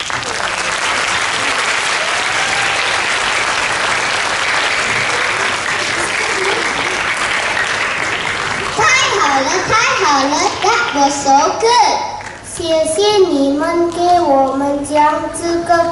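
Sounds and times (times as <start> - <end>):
audience applause: 0.0 - 11.0.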